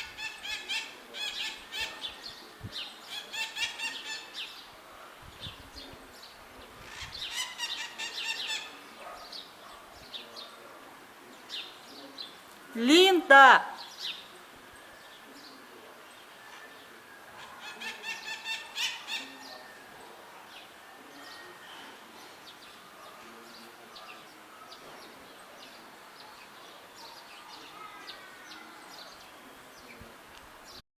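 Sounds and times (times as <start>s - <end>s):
parrots screeching: 17.6s - 19.4s.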